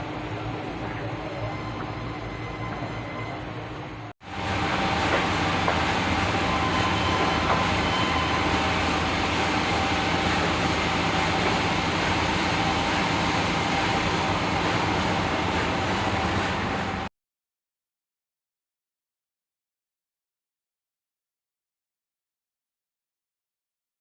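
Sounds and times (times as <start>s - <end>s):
band sawmill running: 0.0s - 17.1s.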